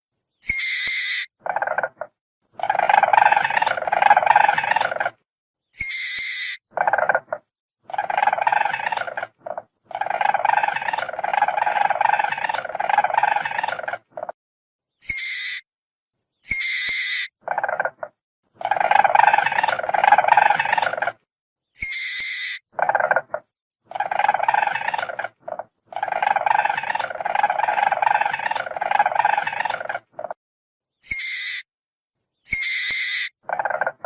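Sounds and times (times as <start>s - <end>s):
weasel squealing: 5.8s - 14.0s, 21.8s - 30.0s.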